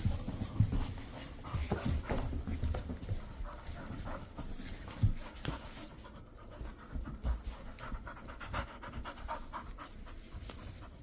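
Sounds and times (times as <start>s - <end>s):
knocks and rustles: 0.0s - 8.0s
puppy panting: 0.0s - 11.0s.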